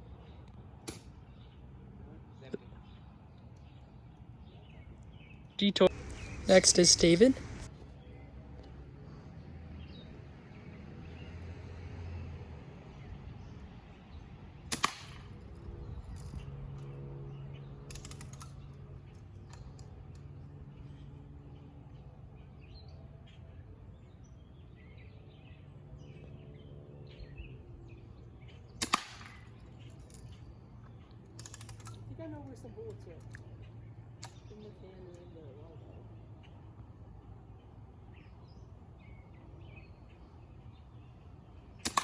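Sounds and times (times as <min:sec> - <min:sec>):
steady low hum: 0:05.2 - 0:09.3
bb gun pops: 0:14.7 - 0:15.4, 0:28.8 - 0:29.5.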